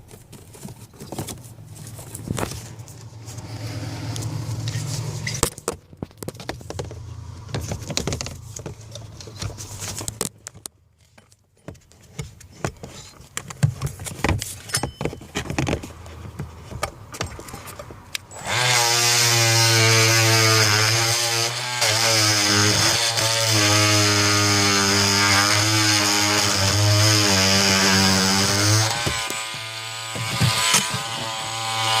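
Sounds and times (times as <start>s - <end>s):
loud buzzing motor: 18.3s - 32.0s.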